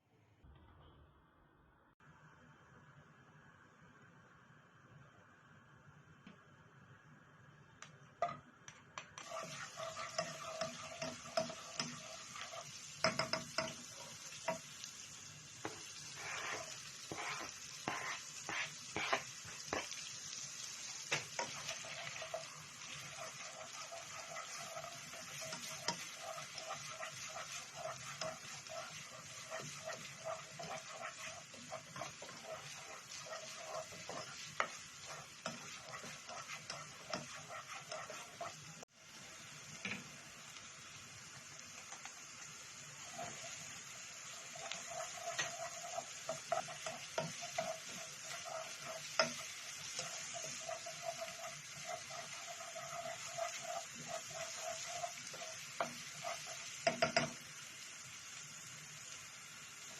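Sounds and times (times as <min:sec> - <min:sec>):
food sizzling in a pan: 0:02.0 - 0:59.9
utensil stirring and scraping: 0:09.2 - 0:14.8, 0:15.6 - 0:38.9, 0:43.0 - 0:57.4.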